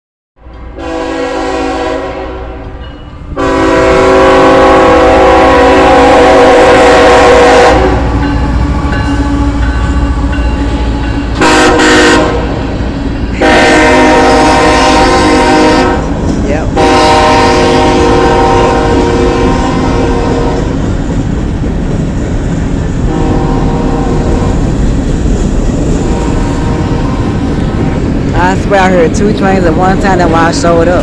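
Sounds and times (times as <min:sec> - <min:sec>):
passing train rumble: 0:00.4 - 0:31.0
train horn blasts: 0:00.7 - 0:02.8, 0:03.4 - 0:08.3, 0:11.3 - 0:12.7, 0:13.4 - 0:20.8, 0:23.1 - 0:24.6, 0:26.0 - 0:27.4.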